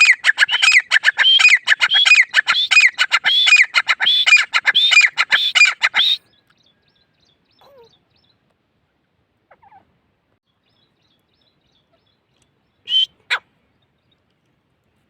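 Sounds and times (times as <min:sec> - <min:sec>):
francolin calling: 0:00.0 - 0:06.4, 0:12.8 - 0:13.4
high chirps of small birds: 0:00.0 - 0:08.5, 0:10.4 - 0:14.4.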